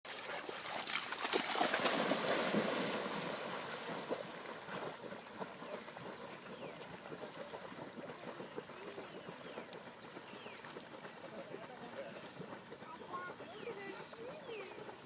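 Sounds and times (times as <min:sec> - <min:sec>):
water splashing around puppy: 0:00.1 - 0:15.0.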